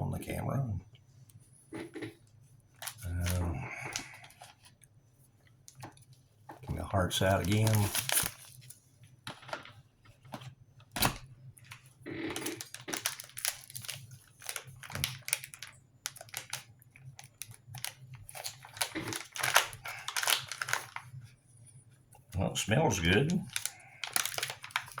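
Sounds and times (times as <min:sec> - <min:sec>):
plastic packaging crinkling: 0:02.7 - 0:04.8, 0:06.7 - 0:09.8, 0:11.0 - 0:21.3, 0:22.6 - 0:25.0.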